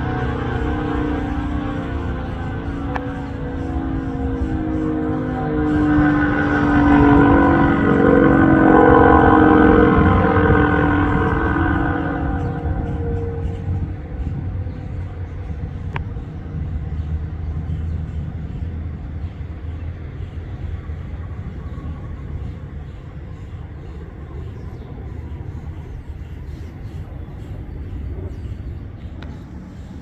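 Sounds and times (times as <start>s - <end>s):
siren winding down: 0.0s - 14.1s
steady low rumble: 0.0s - 30.0s.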